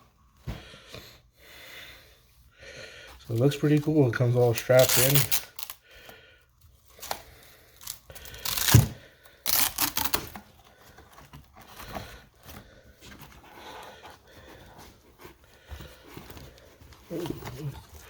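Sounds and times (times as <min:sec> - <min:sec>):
strap tearing rasps: 0:04.5 - 0:05.8, 0:07.8 - 0:10.4
case rustling and handling: 0:07.8 - 0:18.0.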